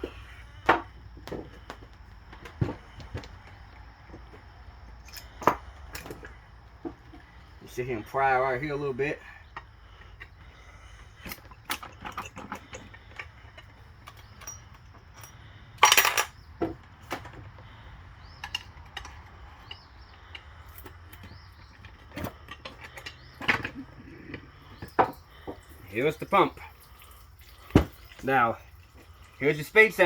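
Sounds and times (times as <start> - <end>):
metal clicks and knocks: 18.4 - 25.7.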